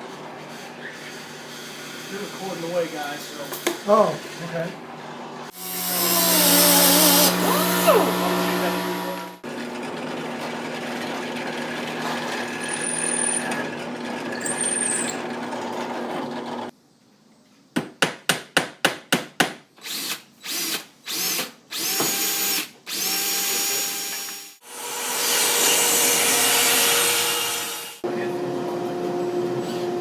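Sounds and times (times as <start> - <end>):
power drill running: 5.5 - 16.7, 19.8 - 28.0.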